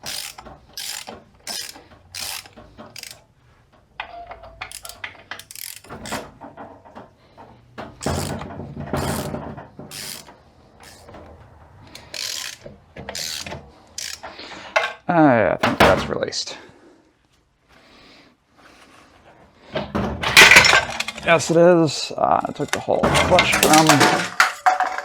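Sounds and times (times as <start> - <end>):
hand tools clicking on metal: 0.0 - 3.2, 4.4 - 6.2, 8.0 - 8.4, 9.9 - 11.1, 11.9 - 15.0.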